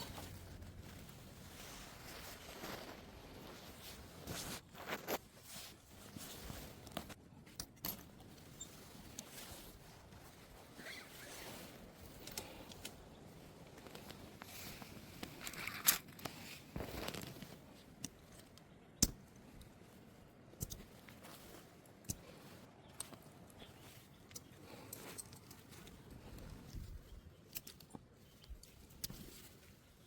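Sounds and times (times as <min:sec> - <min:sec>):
gear rustling and scraping: 0:00.0 - 0:30.0.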